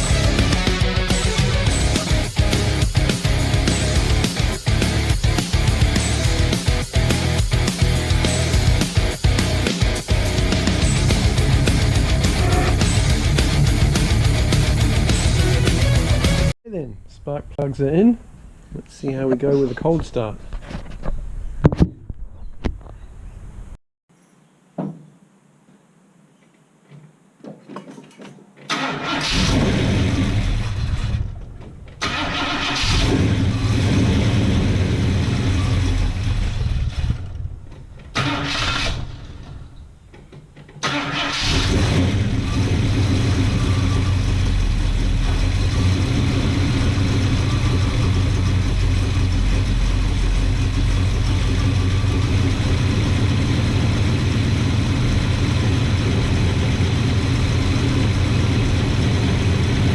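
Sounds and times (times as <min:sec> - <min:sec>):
car engine starting and running: 0:00.0 - 0:16.6, 0:28.7 - 0:39.6, 0:40.8 - 0:59.9.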